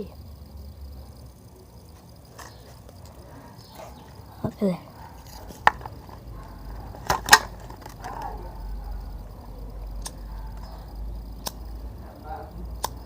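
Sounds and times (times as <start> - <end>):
sharp clicks: 5.5 - 8.4, 9.9 - 11.9, 12.7 - 13.0.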